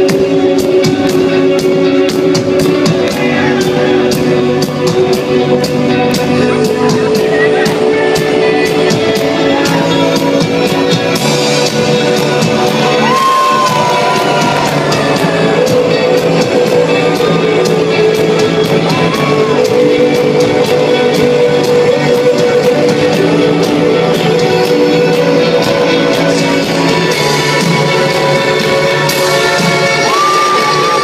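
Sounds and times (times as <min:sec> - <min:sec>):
rock band playing live: 0:00.0 - 0:31.0
steady drum beat: 0:00.0 - 0:31.0
crowd shouts and whoops: 0:12.8 - 0:16.3, 0:18.7 - 0:19.8, 0:29.5 - 0:31.0.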